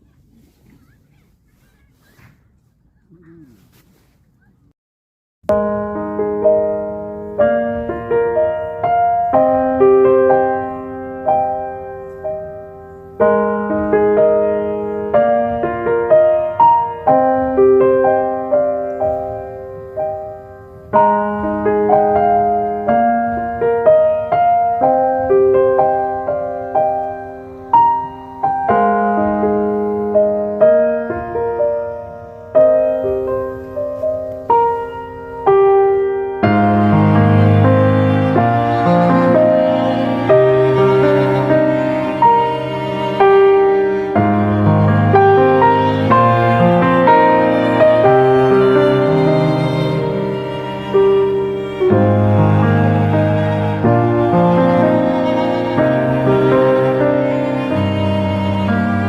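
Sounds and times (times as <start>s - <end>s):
slow solo piano melody: 5.5s - 59.0s.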